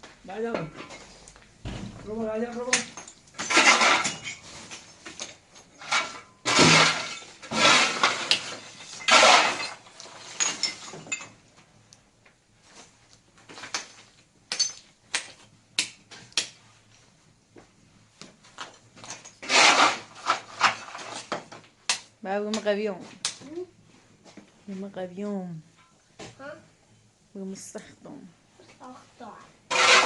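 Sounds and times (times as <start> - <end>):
household objects clattering: 0.5 - 11.4, 18.5 - 21.6, 29.7 - 30.0
rattling scrapes: 3.4 - 11.2, 19.1 - 21.3, 29.7 - 30.0.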